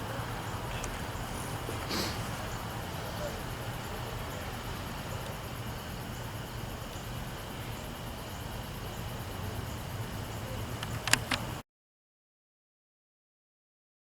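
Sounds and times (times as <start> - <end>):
train rumbling by: 0.0 - 10.8.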